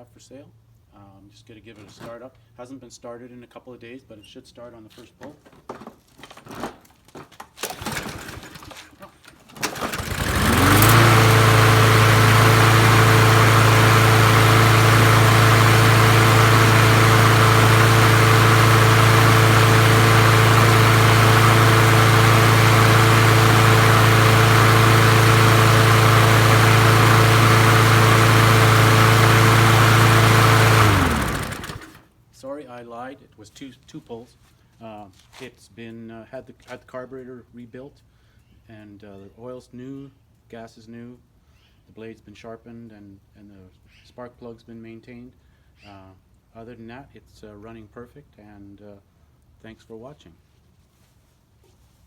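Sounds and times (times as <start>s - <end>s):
lawnmower engine pull-starting: 1.8s - 2.3s, 4.9s - 32.1s
lawnmower engine running: 7.2s - 32.1s.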